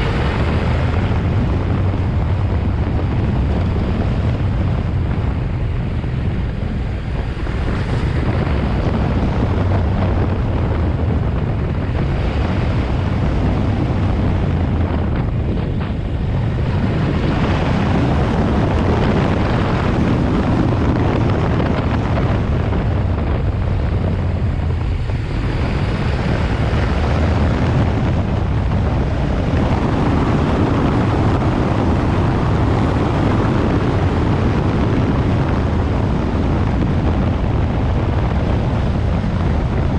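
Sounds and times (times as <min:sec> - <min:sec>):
wind noise on microphone: 0:00.0 - 0:39.9.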